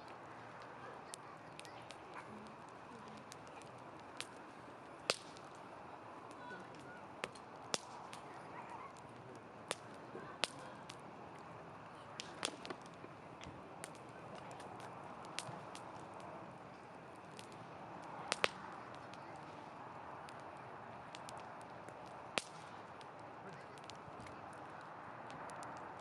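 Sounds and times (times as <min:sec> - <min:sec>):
wood fire crackling: 0:00.0 - 0:26.0.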